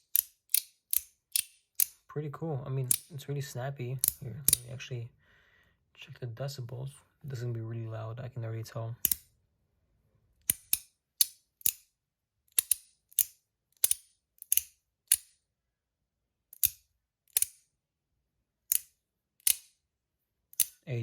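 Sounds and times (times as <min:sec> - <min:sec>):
sharp metallic magnetic clicks: 0:00.0 - 0:02.0, 0:02.9 - 0:03.1, 0:04.0 - 0:04.7, 0:09.0 - 0:09.2, 0:10.4 - 0:11.8, 0:12.5 - 0:15.3, 0:16.6 - 0:17.6, 0:18.7 - 0:19.7.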